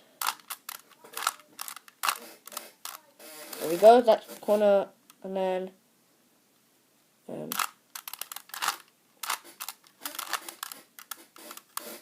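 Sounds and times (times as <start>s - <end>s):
puzzle cube twisting clicks: 0.2s - 3.8s, 7.5s - 12.0s.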